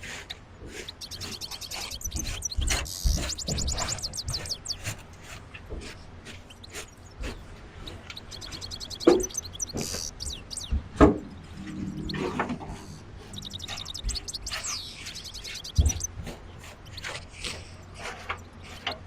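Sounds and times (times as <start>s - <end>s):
small birds trilling: 0.0s - 19.0s
loud sharp knocks: 1.2s - 5.0s, 9.0s - 11.4s.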